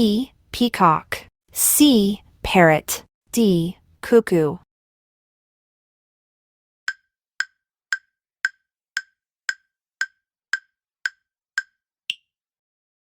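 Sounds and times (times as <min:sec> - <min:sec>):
clock-like timer ticks: 0:06.9 - 0:12.3.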